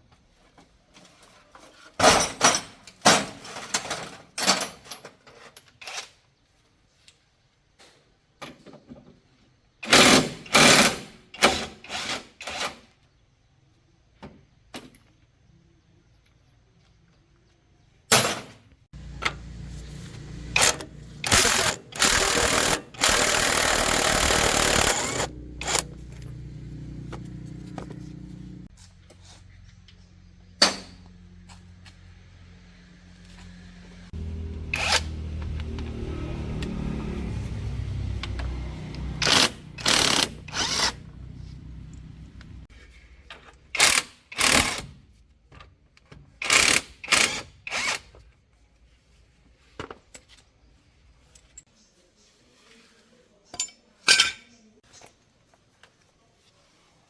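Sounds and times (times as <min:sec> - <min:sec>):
low mechanical hum: 0:19.0 - 0:42.7.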